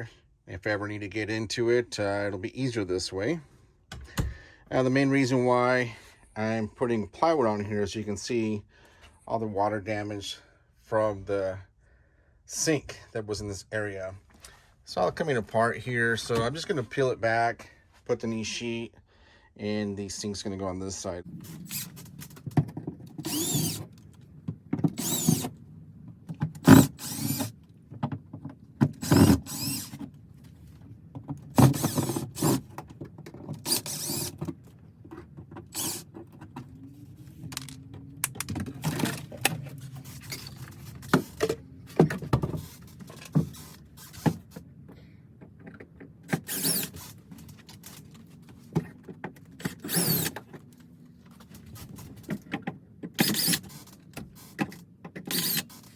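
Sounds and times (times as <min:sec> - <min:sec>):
cordless drill bursts: 0:21.6 - 0:21.9, 0:23.2 - 0:23.9, 0:25.0 - 0:25.5, 0:26.6 - 0:27.6, 0:29.0 - 0:30.0, 0:31.6 - 0:32.7, 0:33.6 - 0:34.4, 0:35.7 - 0:36.1, 0:46.4 - 0:47.2, 0:49.8 - 0:50.4, 0:53.2 - 0:54.6, 0:55.2 - 0:55.9.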